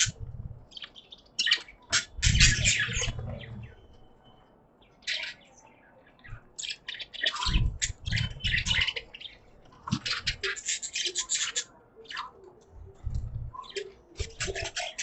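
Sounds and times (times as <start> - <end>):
budgerigars chirping: 0.0 - 3.9, 6.3 - 12.4, 13.6 - 15.0.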